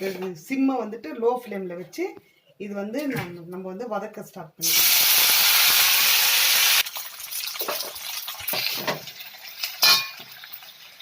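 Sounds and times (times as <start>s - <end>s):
leaves sizzling in hot oil: 4.6s - 11.0s.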